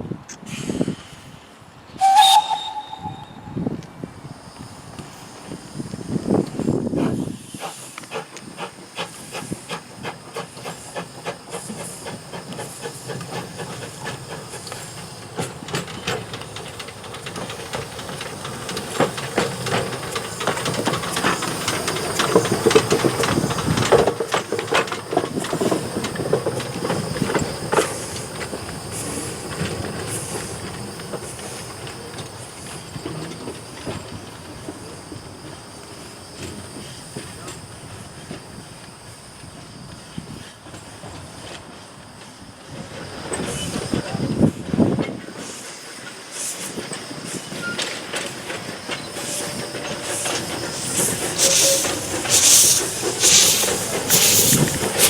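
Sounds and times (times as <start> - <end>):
steam locomotive hissing: 0.4 - 55.0
metal clicks on rail: 7.6 - 34.8, 46.4 - 55.0.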